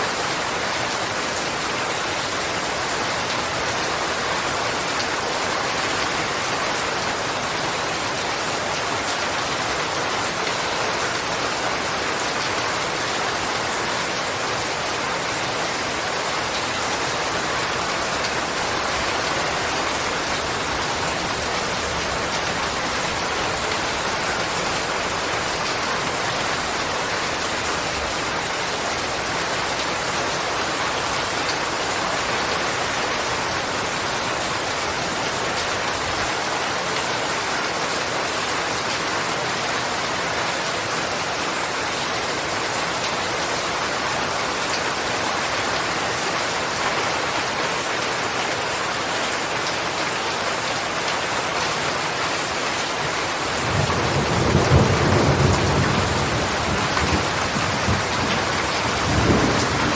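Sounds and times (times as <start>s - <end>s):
rain pattering: 0.0s - 59.9s.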